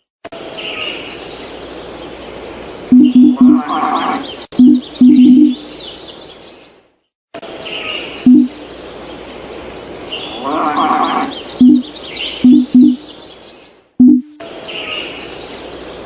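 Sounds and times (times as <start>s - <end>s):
birds chirping: 0.0s - 6.8s, 7.6s - 16.0s
loud low-pitched blips: 2.9s - 3.6s, 4.6s - 5.6s, 8.3s - 8.5s, 11.6s - 13.0s, 14.0s - 14.4s.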